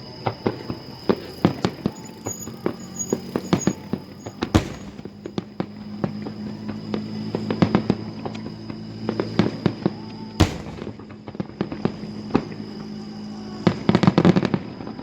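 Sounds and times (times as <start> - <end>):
fireworks bursting: 0.2 - 8.0, 10.4 - 12.6.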